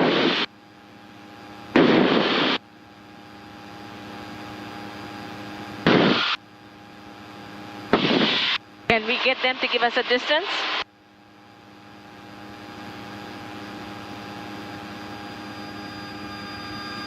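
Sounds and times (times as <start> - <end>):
radio static hiss: 0.0 - 0.5, 1.8 - 2.6, 5.8 - 6.4, 7.8 - 10.9
light aircraft engine drone: 0.0 - 17.0.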